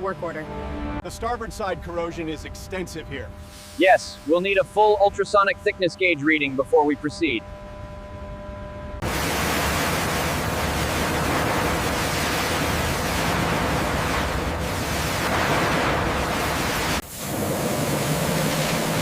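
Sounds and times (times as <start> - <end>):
sea surf rushing: 9.0 - 19.0.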